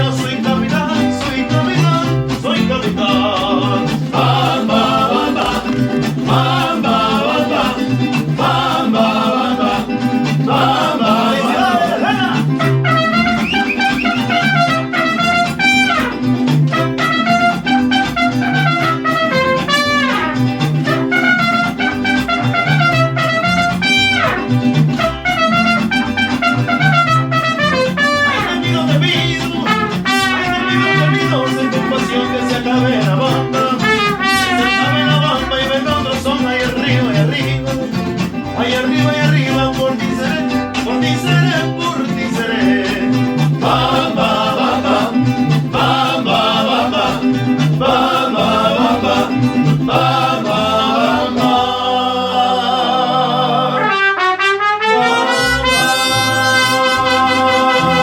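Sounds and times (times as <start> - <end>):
person singing: 0.0 - 15.8, 27.6 - 54.1, 54.9 - 58.0
bass rhythm: 0.0 - 51.8, 55.2 - 58.0
trumpets: 12.6 - 28.6, 29.6 - 32.6, 33.8 - 35.6, 53.7 - 58.0.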